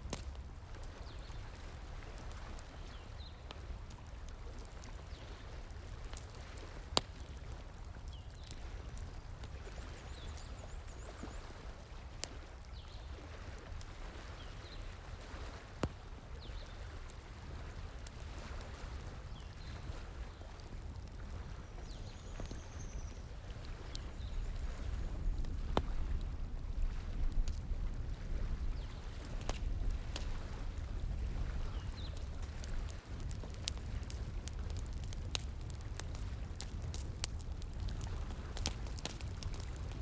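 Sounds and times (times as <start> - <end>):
wood fire crackling: 0.0 - 40.0
sharp fire pops: 25.3 - 27.7, 28.8 - 40.0.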